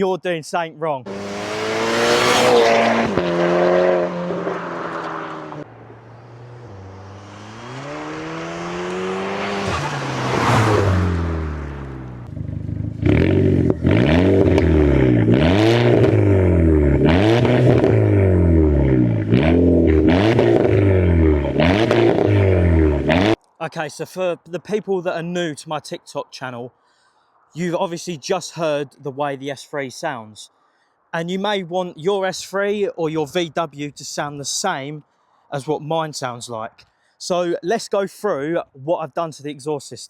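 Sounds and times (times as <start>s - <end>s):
car engine revving: 1.1s - 23.4s.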